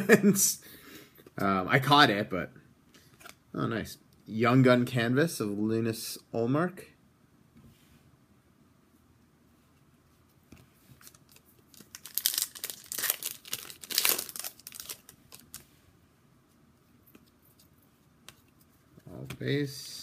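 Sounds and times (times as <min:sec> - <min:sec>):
wrapper crinkling and tearing: 0:11.0 - 0:15.6.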